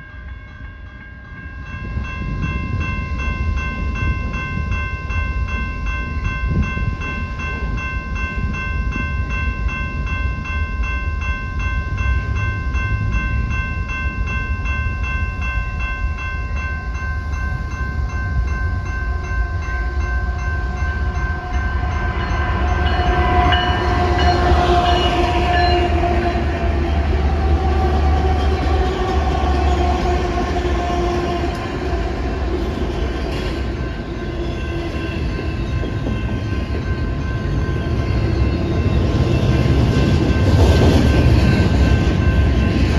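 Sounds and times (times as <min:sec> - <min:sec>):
pulsing bell-like ringing: 0:00.0 - 0:42.9
train rumbling past: 0:00.6 - 0:42.9.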